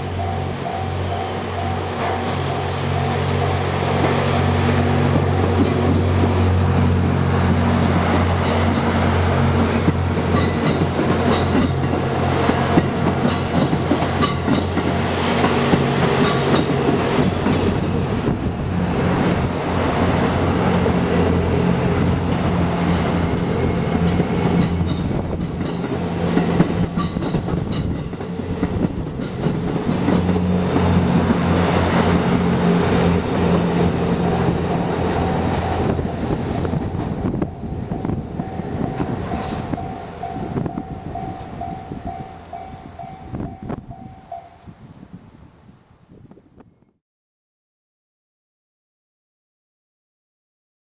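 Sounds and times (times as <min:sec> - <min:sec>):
diesel train engines humming: 0:00.0 - 0:44.7
wheels clicking on rail joints: 0:07.4 - 0:44.5.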